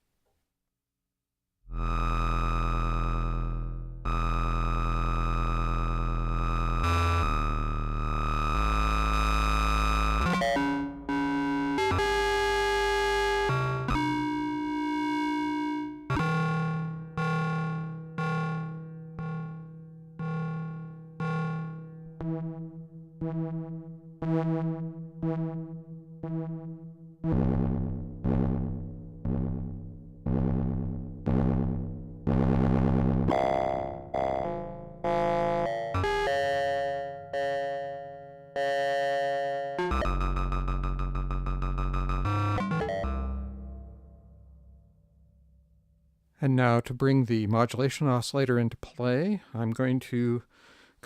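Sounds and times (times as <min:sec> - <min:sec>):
synthesizer gated notes: 0:01.7 - 0:44.8
synthesizer tones jumping pitch: 0:30.3 - 0:44.2.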